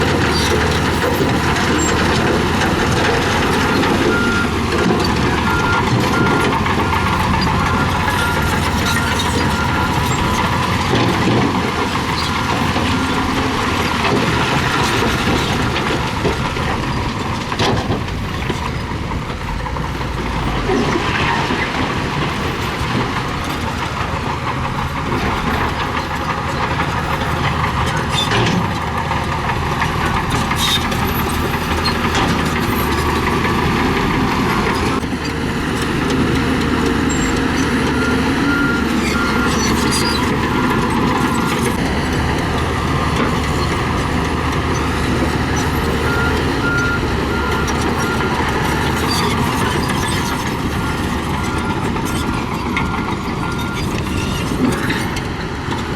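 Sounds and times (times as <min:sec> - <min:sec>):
heavy machinery diesel engines: 0:00.0 - 0:55.9
reversing alarm beeping: 0:03.2 - 0:11.3, 0:44.8 - 0:49.9.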